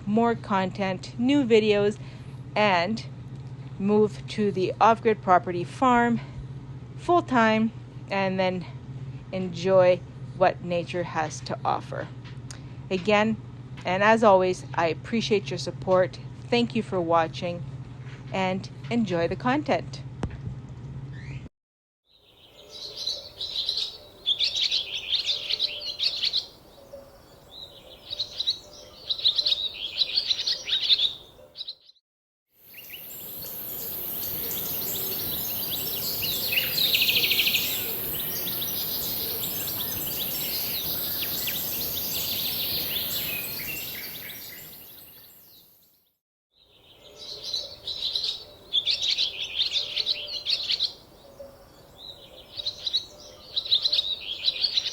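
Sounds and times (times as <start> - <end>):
songbird chirping: 22.2 - 32.0, 32.7 - 45.9, 46.6 - 54.9
high-pitched hiss: 32.7 - 43.6.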